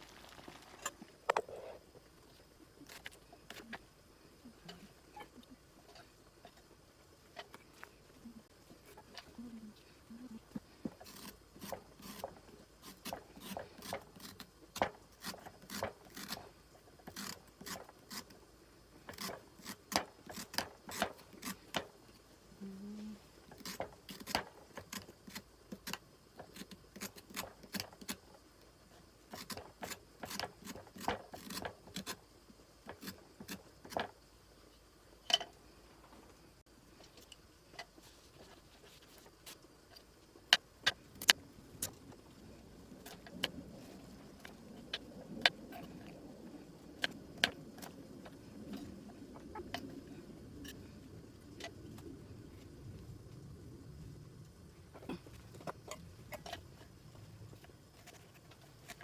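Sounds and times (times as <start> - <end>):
small hard objects clattering: 0.0 - 1.1.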